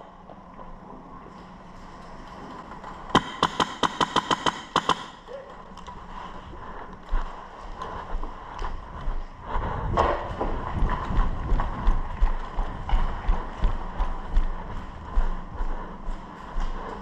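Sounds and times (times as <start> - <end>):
footsteps on hard floor: 6.7 - 17.0.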